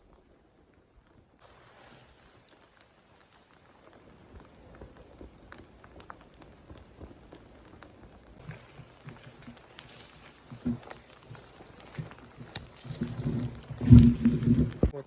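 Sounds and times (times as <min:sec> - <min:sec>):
kindling crackling and popping: 0:00.0 - 0:15.0.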